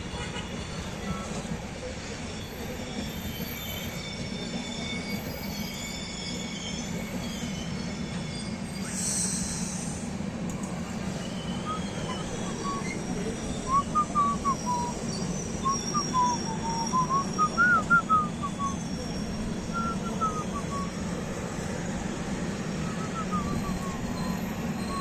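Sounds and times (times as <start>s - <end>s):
train rumbling: 0.0s - 25.0s
whistled tune: 11.1s - 21.8s, 22.4s - 25.0s.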